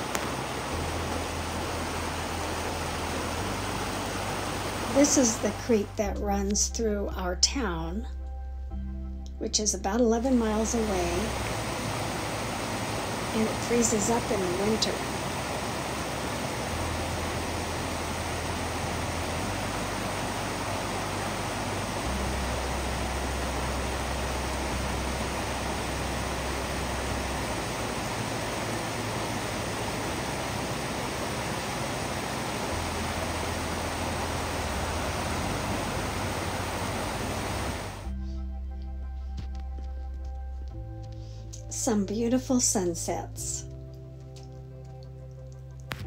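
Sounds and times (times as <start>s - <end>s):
creek water rushing: 0.0s - 6.0s, 10.4s - 38.1s.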